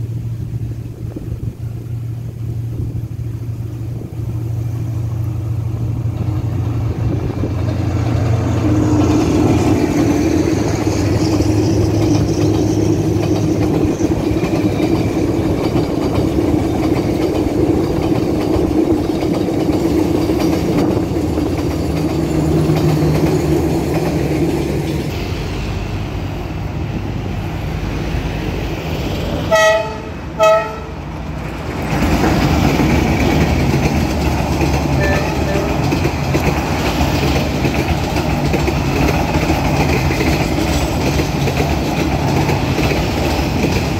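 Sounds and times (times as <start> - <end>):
train rumbling on rails: 0.0 - 43.9
train horn toots: 29.5 - 31.0, 34.9 - 36.0.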